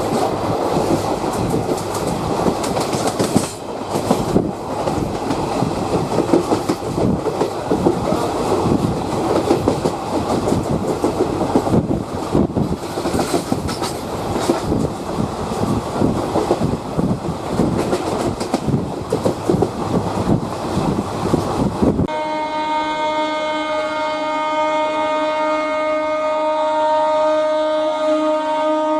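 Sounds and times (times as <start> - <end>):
train wheel clatter: 0.0 - 22.0
train rolling rumble: 0.0 - 22.1.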